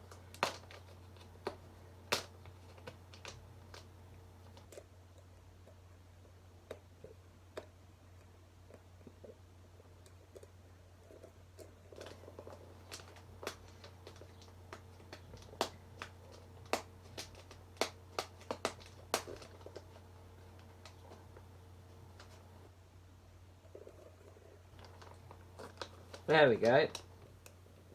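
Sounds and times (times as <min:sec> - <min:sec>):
packaging crackling and clicking: 0:00.0 - 0:04.8, 0:11.9 - 0:22.6, 0:24.8 - 0:27.6.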